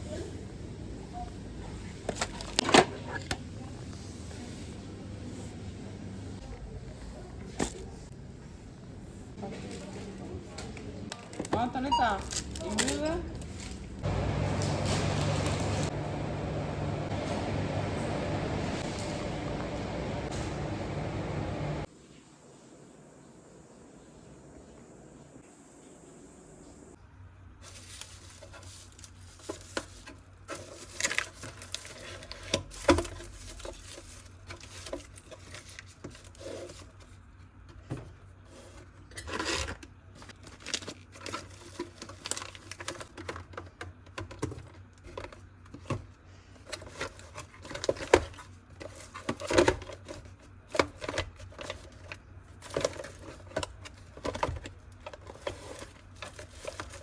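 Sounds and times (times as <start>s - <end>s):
small clicks and crinkles of handling: 9.5s - 14.0s, 27.6s - 57.0s.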